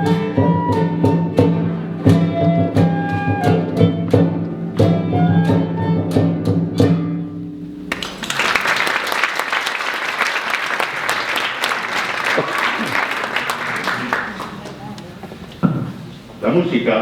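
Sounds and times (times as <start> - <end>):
early-music ensemble dance: 0.0 - 16.9
audience applause: 7.9 - 15.0.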